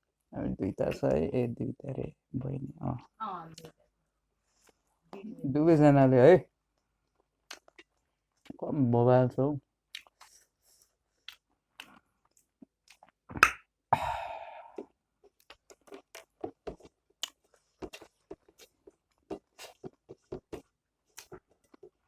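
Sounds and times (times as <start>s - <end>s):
chewing food: 7.0s - 8.6s, 9.9s - 13.5s, 14.7s - 22.0s.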